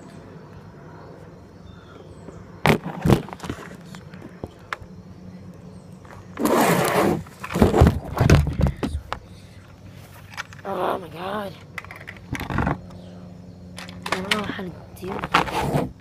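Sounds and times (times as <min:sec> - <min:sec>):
rustling and bumping handling noise: 0:02.6 - 0:04.7, 0:06.0 - 0:09.2, 0:09.9 - 0:10.6, 0:11.6 - 0:12.9.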